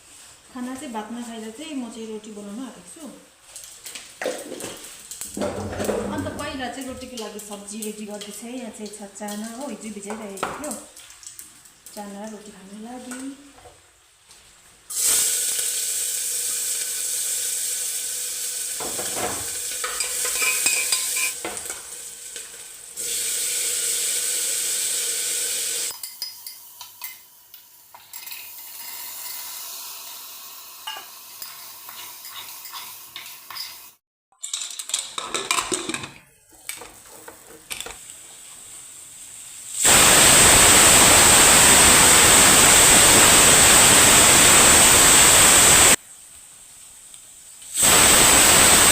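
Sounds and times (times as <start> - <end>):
food sizzling in a pan: 0.0 - 34.0, 35.4 - 48.9
spoon scraping a pan: 19.8 - 21.8, 30.9 - 33.9
loud steady hiss: 22.9 - 26.0, 38.0 - 48.9.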